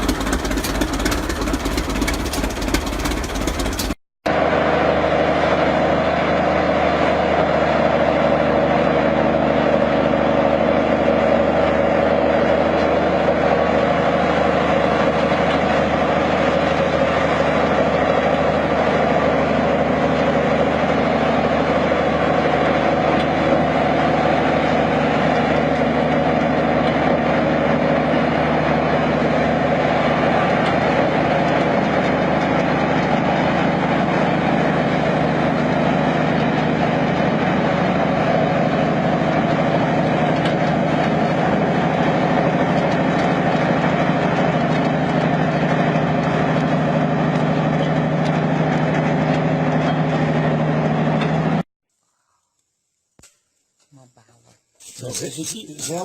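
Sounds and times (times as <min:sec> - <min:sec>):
heavy engine running: 0:00.0 - 0:51.6, 0:54.8 - 0:56.0
constant low hum: 0:52.0 - 0:56.0.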